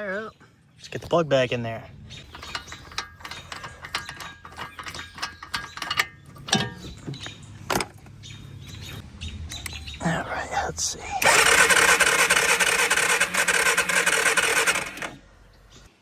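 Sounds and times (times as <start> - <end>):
ratchet wrench clicking: 2.3 - 6.7, 11.2 - 15.2.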